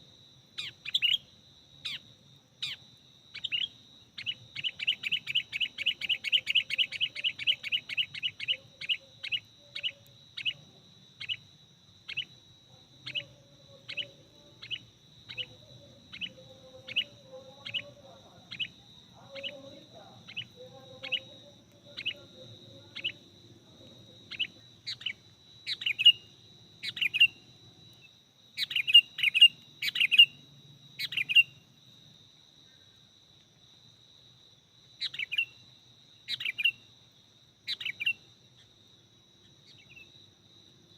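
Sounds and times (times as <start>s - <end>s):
bird chirping: 0.6s - 11.5s, 12.1s - 12.4s, 13.0s - 23.3s, 24.2s - 30.4s, 31.0s - 31.6s, 35.0s - 35.6s, 36.3s - 36.8s, 37.7s - 38.7s.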